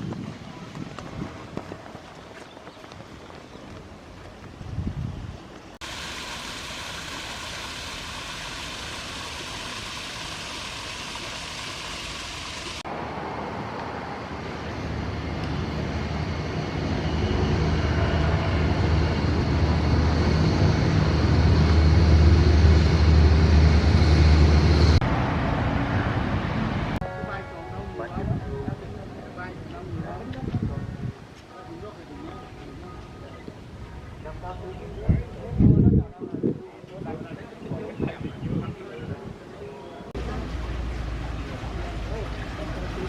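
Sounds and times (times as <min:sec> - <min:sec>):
vehicle hiss: 0:05.8 - 0:12.8
vehicle low rumble: 0:40.1 - 0:43.0.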